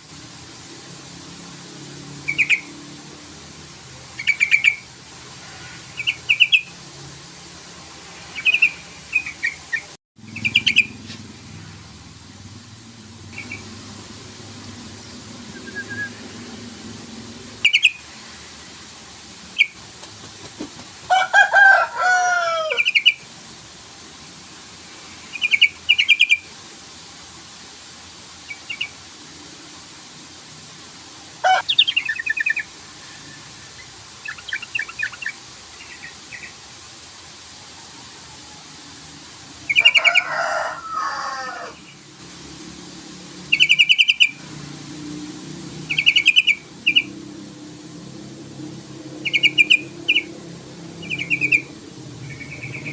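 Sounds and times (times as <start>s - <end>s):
bulbul calling: 2.3s - 2.7s, 4.2s - 4.9s, 6.0s - 6.7s, 8.4s - 11.2s, 13.3s - 13.7s, 17.6s - 18.0s, 31.4s - 32.7s, 43.5s - 44.4s, 45.9s - 47.1s, 49.2s - 50.3s, 51.0s - 52.9s.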